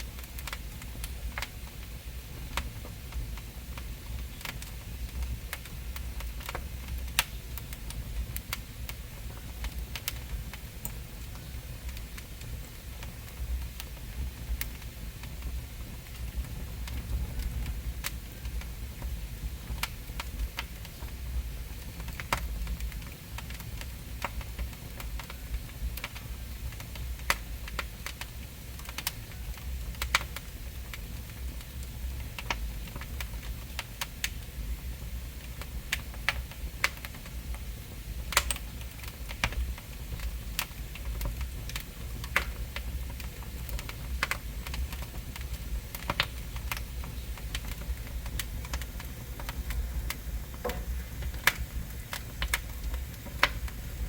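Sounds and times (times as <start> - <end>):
fire crackling and popping: 0.0 - 54.0
low steady rumble: 30.7 - 54.0.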